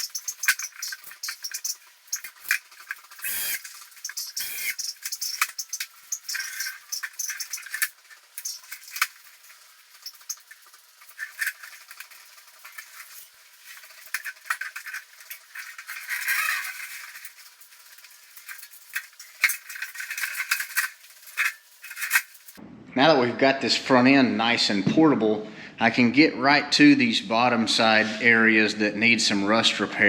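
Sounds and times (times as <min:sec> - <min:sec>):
metal clinks and rattles: 0:00.0 - 0:22.6
scraping: 0:00.0 - 0:22.6.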